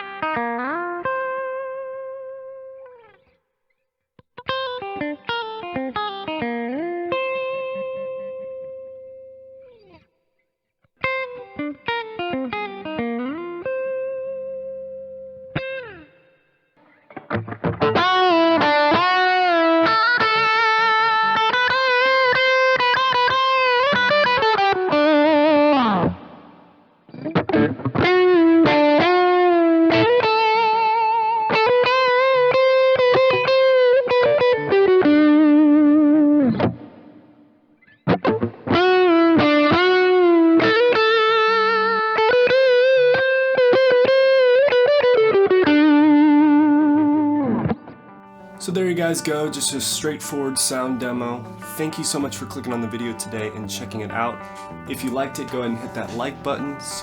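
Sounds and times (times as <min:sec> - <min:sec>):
distorted electric guitar lead: 0:17.1 - 0:57.0.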